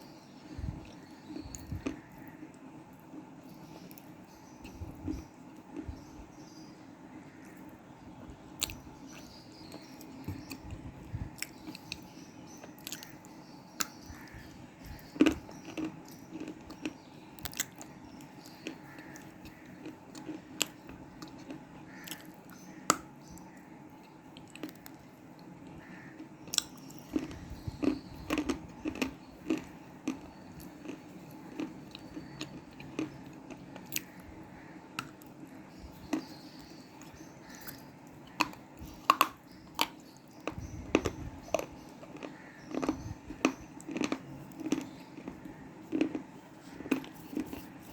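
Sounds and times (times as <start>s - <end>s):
faint steady hum: 0.0s - 47.9s
crunchy biting and chewing: 12.6s - 13.2s, 13.8s - 23.0s, 25.6s - 34.3s, 35.0s - 47.9s.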